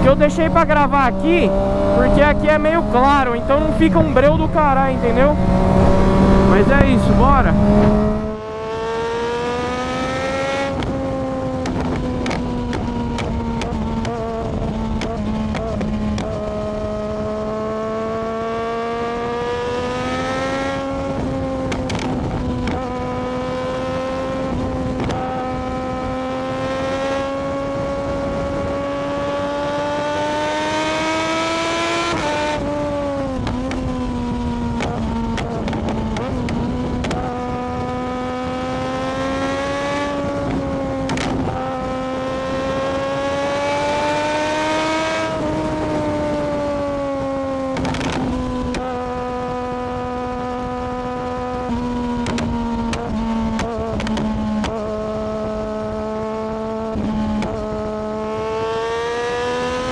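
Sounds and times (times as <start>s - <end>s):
wind rushing: 0.0s - 8.4s
motorcycle engine revving: 0.0s - 59.9s.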